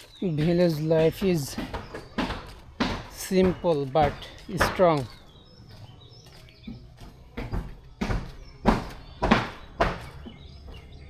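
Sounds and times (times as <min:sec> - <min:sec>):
footsteps walking: 0:00.0 - 0:11.0.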